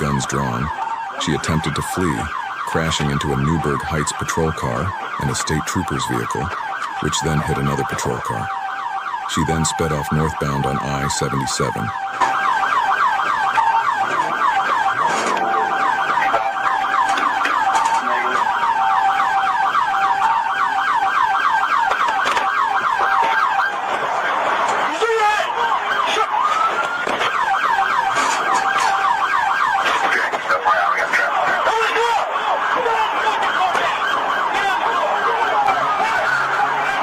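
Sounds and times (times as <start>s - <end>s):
police siren yelping: 0.0s - 37.0s.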